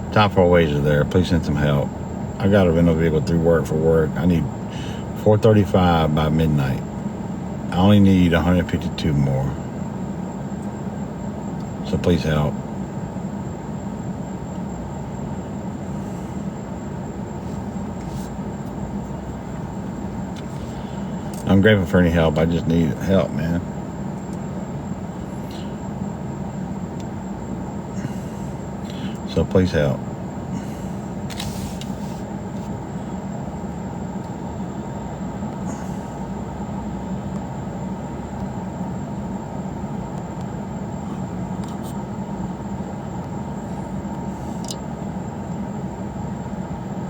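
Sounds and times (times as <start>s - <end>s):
vehicle engine rumbling: 0.0s - 47.0s
brief hiss: 31.3s - 32.2s.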